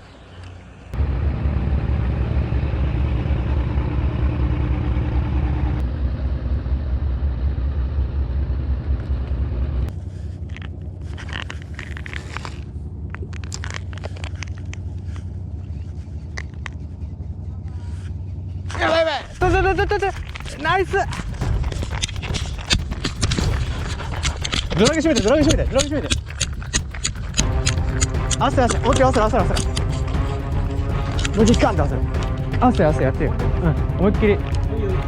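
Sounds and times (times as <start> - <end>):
motor engine humming: 0.0 - 35.0
sharp clicks and rattles: 10.4 - 15.4, 19.3 - 35.0.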